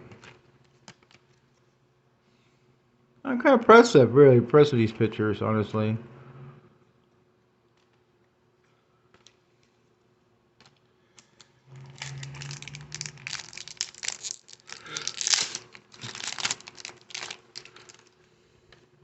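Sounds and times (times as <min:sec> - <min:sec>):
wrapper crinkling: 0:11.2 - 0:18.3.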